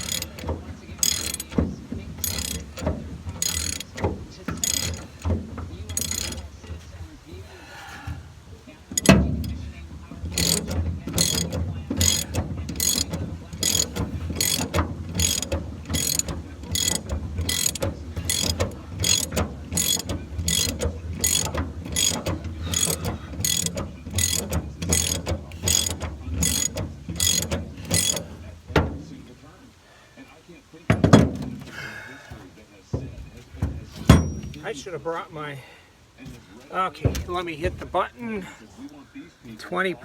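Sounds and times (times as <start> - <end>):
drill ratcheting clicks: 0.0 - 6.8, 8.9 - 28.8.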